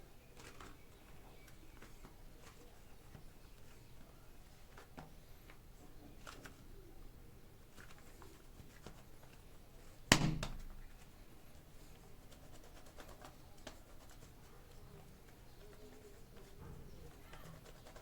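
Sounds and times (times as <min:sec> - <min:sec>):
faint clicks and rustles: 0:00.2 - 0:18.0
hard thunk: 0:10.1 - 0:10.7.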